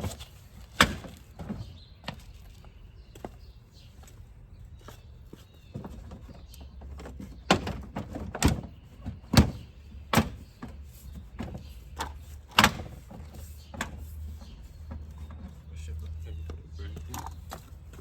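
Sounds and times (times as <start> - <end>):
hollow thumps on plastic bumper: 0.0 - 2.2, 5.7 - 15.6.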